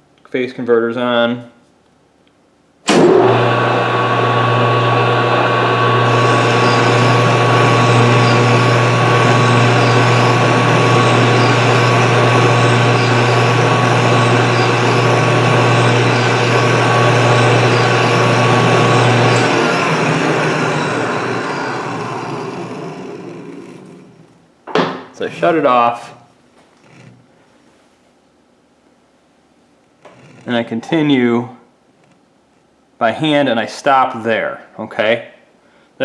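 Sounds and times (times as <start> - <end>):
lathe humming: 2.9 - 24.4.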